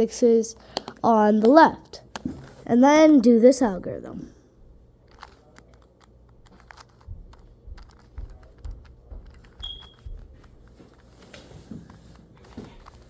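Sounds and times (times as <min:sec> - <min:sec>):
plastic puzzle cube clicking: 0:00.6 - 0:01.0, 0:05.0 - 0:11.1.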